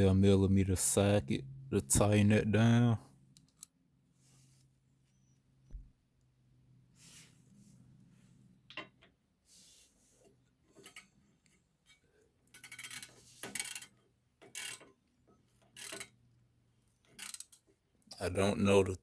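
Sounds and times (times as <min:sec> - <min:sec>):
hand ratchet clicking: 0:12.5 - 0:14.9, 0:15.8 - 0:16.1.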